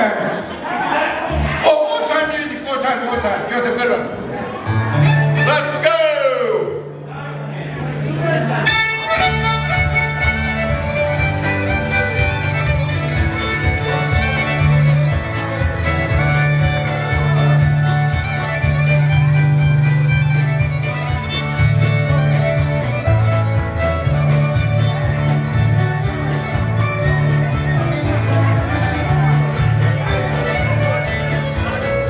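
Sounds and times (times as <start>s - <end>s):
fiddle dance tune with guitar: 4.6s - 6.6s, 8.6s - 32.0s.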